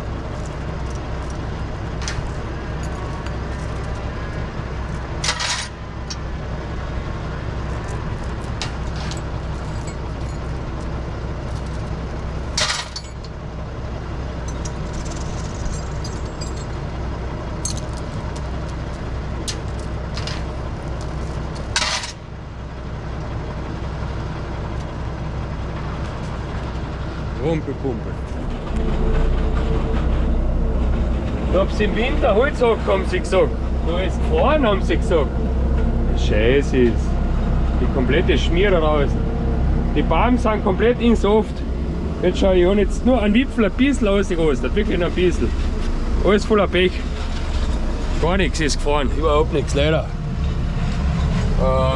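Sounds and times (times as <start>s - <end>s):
tractor engine running: 0.0s - 51.9s
light metallic clinks: 7.7s - 13.3s, 14.4s - 16.8s, 17.6s - 22.2s.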